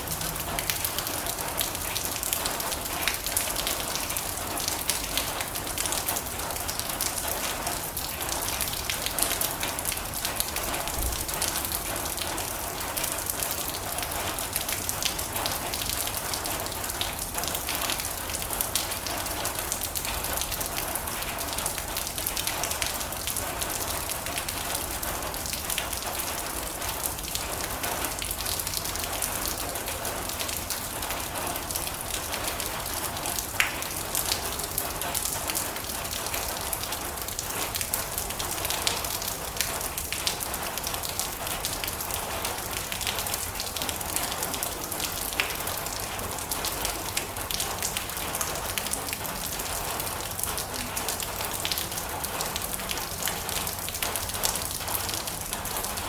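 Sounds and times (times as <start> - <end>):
heavy rain on metal roof: 0.0 - 56.0.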